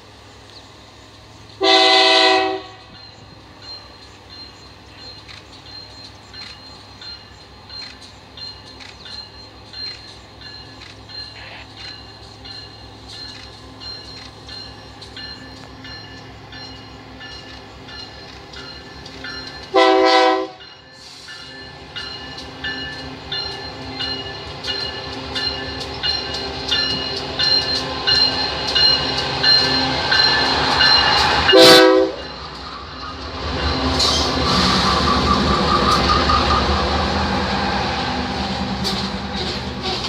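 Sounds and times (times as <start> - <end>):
locomotive horn blasts: 1.6 - 3.0, 19.7 - 20.6, 31.5 - 32.3
train wheels clicking over rails: 2.9 - 19.8, 20.5 - 40.0.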